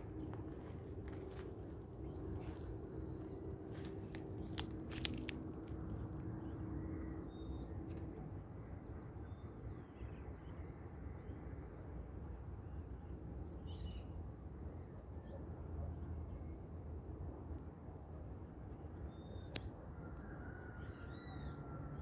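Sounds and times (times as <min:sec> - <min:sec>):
low background rumble: 0:00.0 - 0:09.2.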